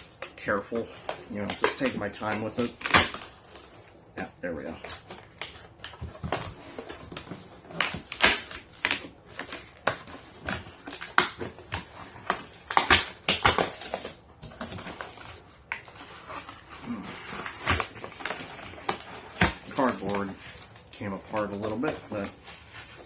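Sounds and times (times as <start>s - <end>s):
cardboard and tape tearing: 0.0s - 23.0s
cardboard scraping and crinkling: 13.6s - 23.0s.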